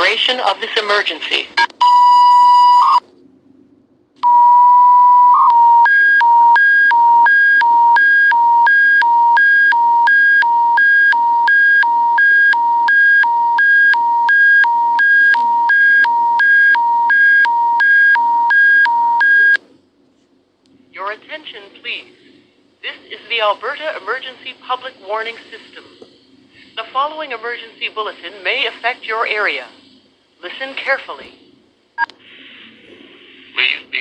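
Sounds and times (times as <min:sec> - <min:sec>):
faint broadcast hum: 0:00.0 - 0:34.0
two-tone warble alarm: 0:04.2 - 0:19.6.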